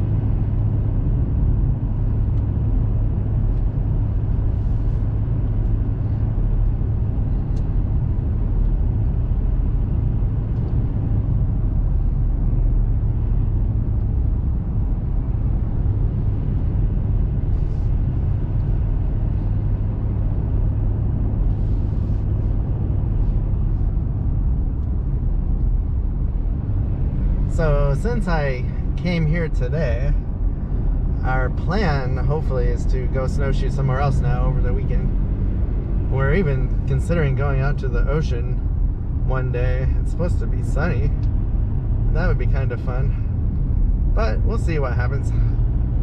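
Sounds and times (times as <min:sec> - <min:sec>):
diesel vehicle engine and road rumble: 0:00.0 - 0:46.0.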